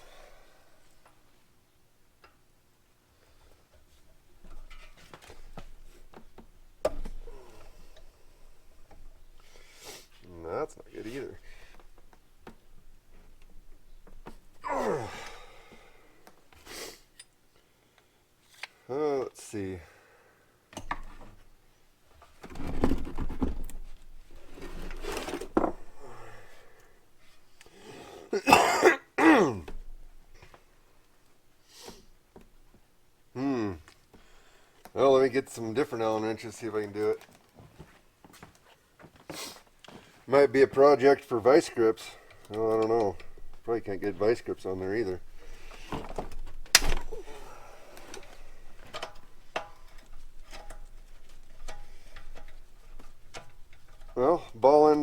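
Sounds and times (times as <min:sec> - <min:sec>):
hand tools rustling and clattering: 0:03.2 - 0:14.7, 0:22.2 - 0:26.2, 0:36.4 - 0:55.0.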